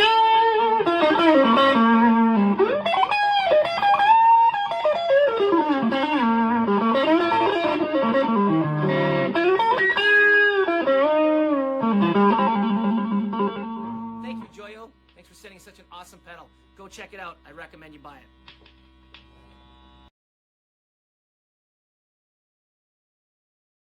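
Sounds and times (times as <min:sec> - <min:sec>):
overdriven electric guitar lead: 0:00.0 - 0:17.4.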